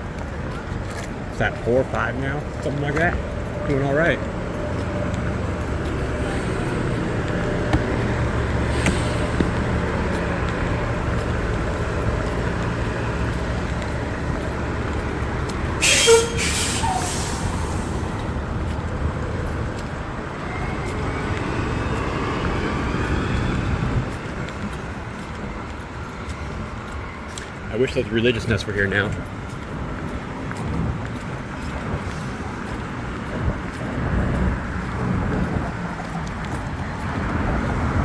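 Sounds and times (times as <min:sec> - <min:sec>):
heavy vehicle engine hum: 0:00.0 - 0:38.0
street traffic: 0:00.0 - 0:38.0
loud air hiss: 0:15.8 - 0:18.1.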